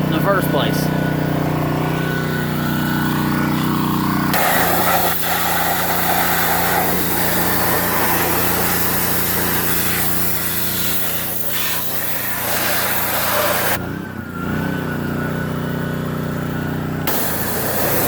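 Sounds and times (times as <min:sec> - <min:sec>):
pressure washer engine running: 0:00.0 - 0:18.0
high-pressure water spray hissing: 0:02.9 - 0:13.8, 0:17.1 - 0:18.0.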